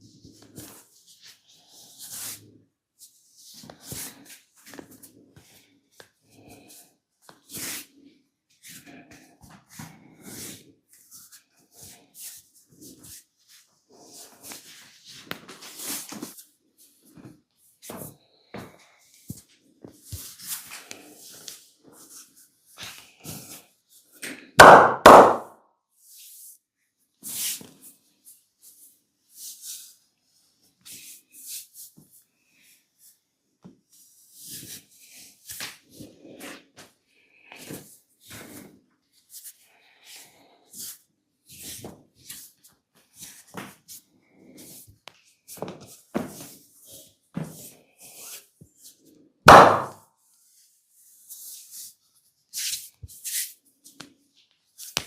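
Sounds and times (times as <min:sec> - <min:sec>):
massage knocks taps and rubbing: 0:24.6 - 0:25.5, 0:49.5 - 0:50.0
loud thumps: 0:49.5 - 0:49.9.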